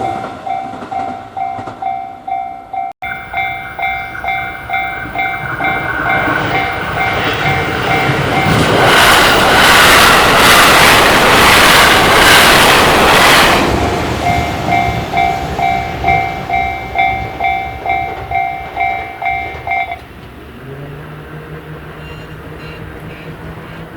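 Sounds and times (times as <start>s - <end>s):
level-crossing bell clanging: 0.0s - 20.2s
train wheels clacking: 3.0s - 20.5s.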